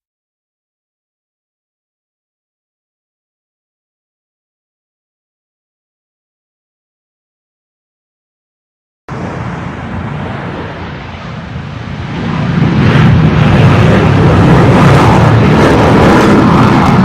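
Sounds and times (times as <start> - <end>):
jet plane engine taking off: 9.1 - 17.0.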